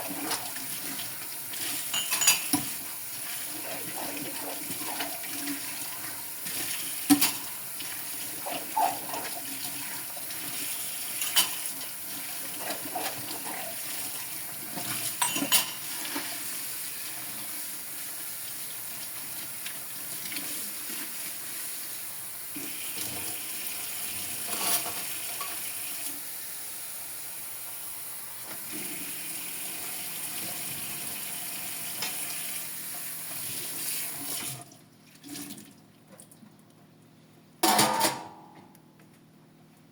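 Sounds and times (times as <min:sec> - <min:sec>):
dishes and cutlery clinking: 0:01.9 - 0:02.7, 0:15.2 - 0:15.9.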